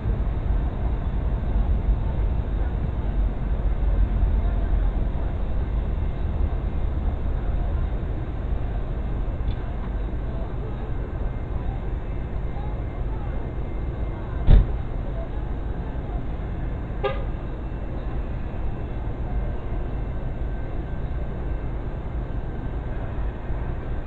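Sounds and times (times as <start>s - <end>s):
vehicle engine idling: 0.0s - 24.0s
sharp thump: 14.5s - 14.8s.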